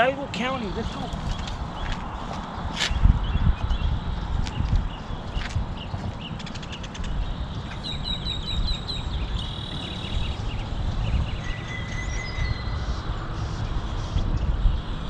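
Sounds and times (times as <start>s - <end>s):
low rumbling noise: 0.0s - 15.0s
high bird chirps: 5.8s - 14.8s.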